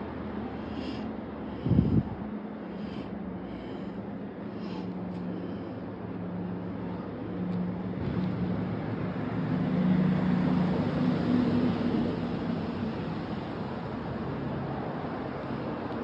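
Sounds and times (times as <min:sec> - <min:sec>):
steady rushing background: 0:00.0 - 0:09.1
passing engine hum: 0:00.0 - 0:16.0.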